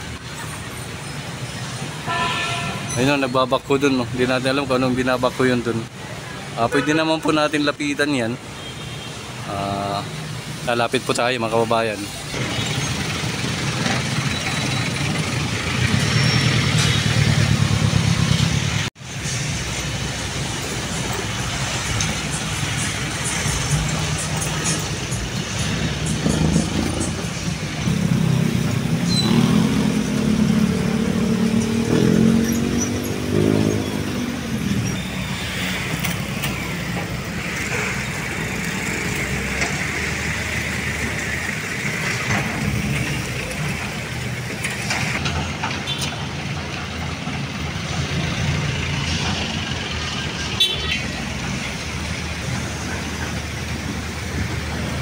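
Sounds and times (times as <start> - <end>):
steady traffic noise: 0.0 - 55.0
vehicle engine passing: 20.2 - 44.1.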